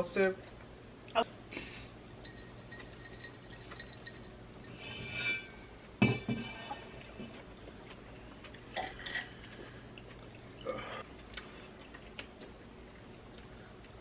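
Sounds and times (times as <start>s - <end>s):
chewing and mouth noises: 7.0s - 14.0s.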